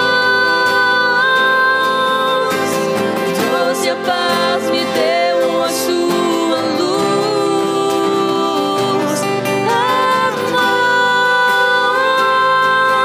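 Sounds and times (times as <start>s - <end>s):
guitar: 0.0s - 13.0s
person singing: 0.0s - 13.0s.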